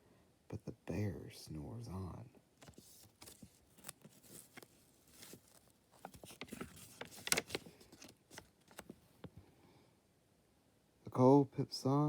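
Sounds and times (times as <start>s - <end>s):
paper pages rustling: 2.6s - 9.4s.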